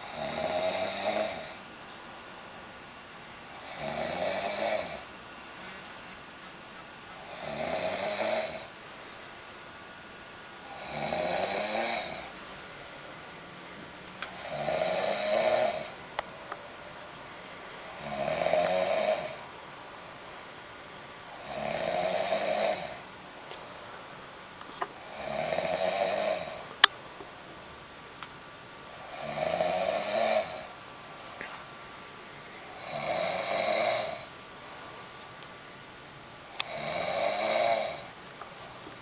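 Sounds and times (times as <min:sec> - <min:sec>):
person snoring: 0:00.0 - 0:01.6, 0:03.5 - 0:05.1, 0:07.2 - 0:08.7, 0:10.7 - 0:12.3, 0:14.3 - 0:16.0, 0:17.9 - 0:19.5, 0:21.3 - 0:23.0, 0:25.0 - 0:26.7, 0:29.0 - 0:30.7, 0:32.6 - 0:34.3, 0:36.6 - 0:38.1.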